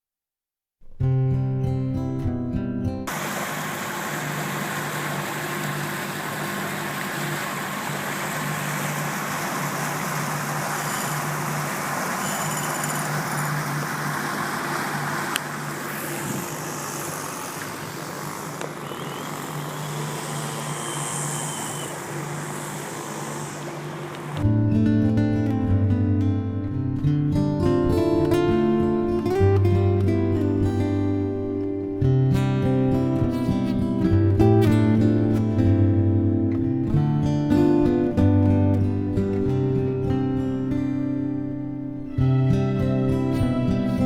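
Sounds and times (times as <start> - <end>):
engine running steadily: 3.1 - 24.5.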